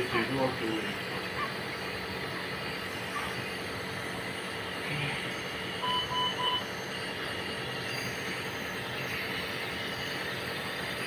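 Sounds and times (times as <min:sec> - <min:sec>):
steady background hum: 0:00.0 - 0:11.0
electronic device beeps: 0:05.8 - 0:06.7.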